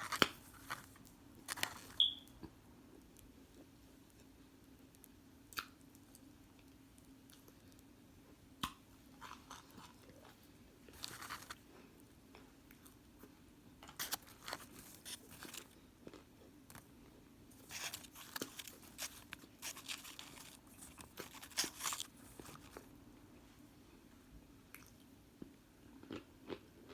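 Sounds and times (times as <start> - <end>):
person chewing crunchy food: 0.0 - 2.2, 9.1 - 13.0, 13.8 - 22.9, 24.7 - 26.9.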